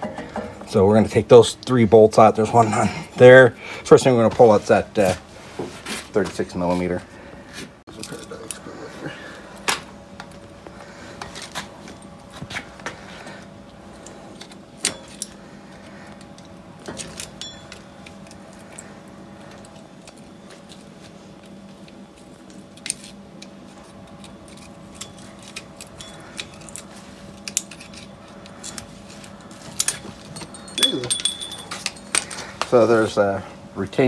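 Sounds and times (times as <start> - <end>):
steady background hum: 0.0 - 34.0
metal parts and tools clinking: 22.7 - 32.6.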